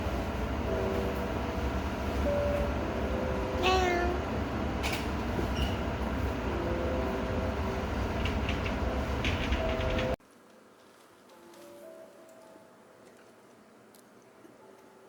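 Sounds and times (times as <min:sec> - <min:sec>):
cat meowing: 0:03.6 - 0:04.2.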